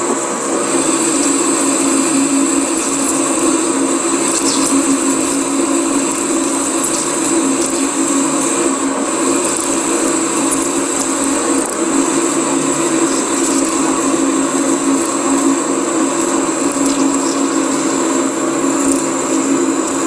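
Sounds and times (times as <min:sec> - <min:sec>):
metal lathe cutting steel: 0:00.0 - 0:20.0.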